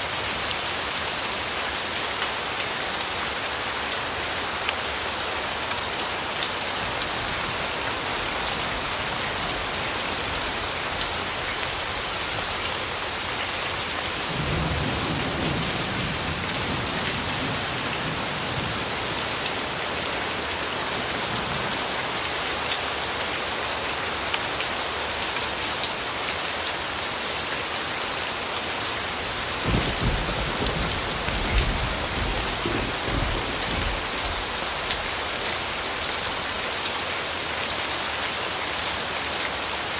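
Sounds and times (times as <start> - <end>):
steady rain: 0.0 - 39.9
low rumble of thunder: 14.3 - 18.9, 29.5 - 34.5.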